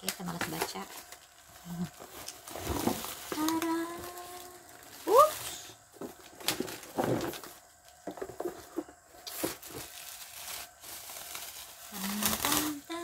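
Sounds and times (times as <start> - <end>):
packaging rustling and crinkling: 0.0 - 13.0.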